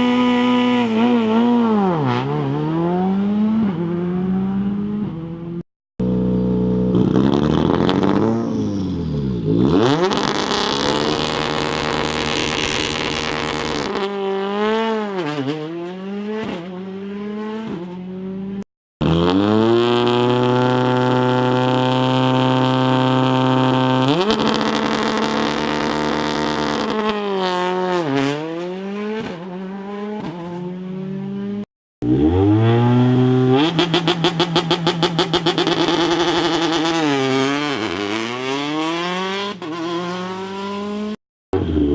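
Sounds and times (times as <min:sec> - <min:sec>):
rally car engines revving: 0:06.2 - 0:41.9
engine stuttering at high revs: 0:30.7 - 0:41.9.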